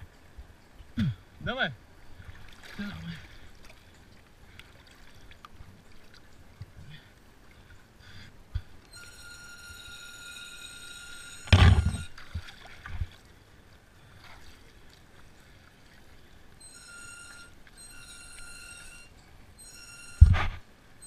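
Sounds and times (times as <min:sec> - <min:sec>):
water splashing and sloshing: 0:00.0 - 0:08.9, 0:10.1 - 0:19.6
high whistling tone: 0:08.9 - 0:12.1, 0:16.6 - 0:20.5.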